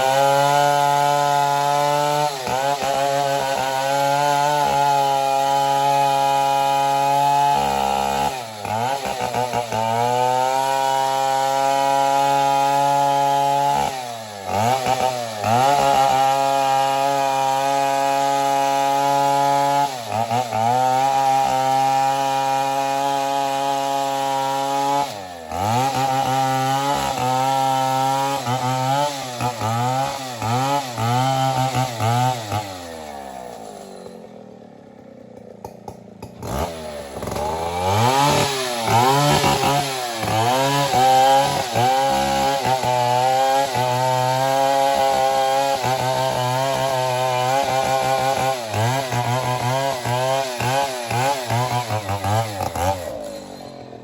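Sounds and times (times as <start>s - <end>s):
chainsaw revving: 0.0s - 54.0s.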